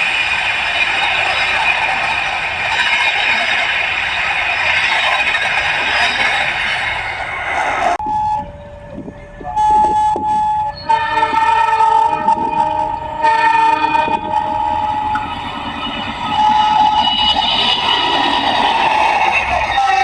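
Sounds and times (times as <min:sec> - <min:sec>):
loud rushing noise: 0:00.0 - 0:08.0, 0:11.2 - 0:20.0
locomotive horn: 0:07.1 - 0:18.1.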